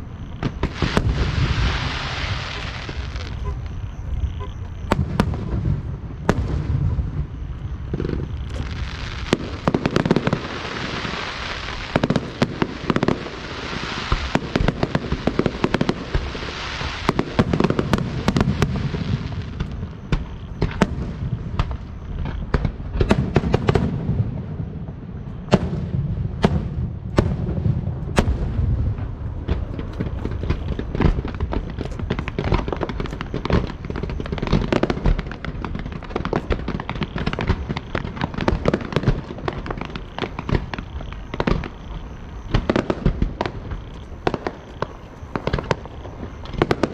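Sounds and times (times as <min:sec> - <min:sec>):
fireworks bangs: 0:00.0 - 0:46.9
fireworks crackling hiss: 0:00.0 - 0:46.9.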